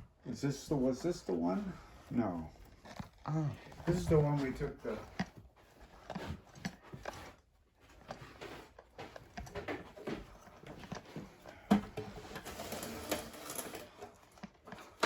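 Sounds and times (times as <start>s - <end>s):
rustling: 0.4s - 15.0s.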